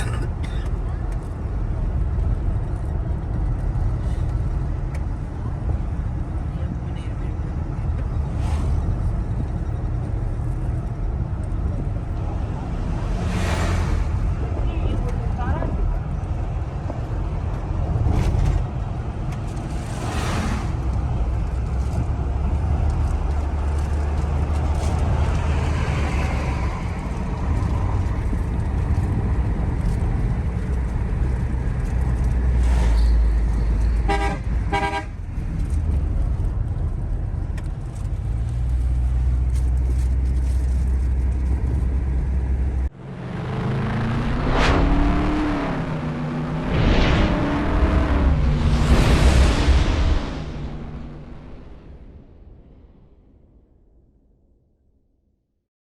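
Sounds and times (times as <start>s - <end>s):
car road and engine noise: 0.0s - 54.1s
car horn toots: 34.1s - 35.1s.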